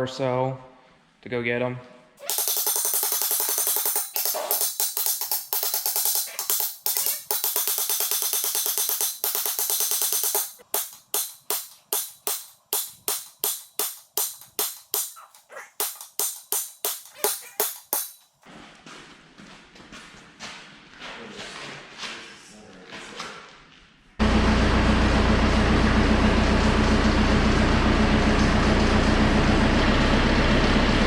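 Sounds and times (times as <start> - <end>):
shaken percussion music: 2.2 - 18.2.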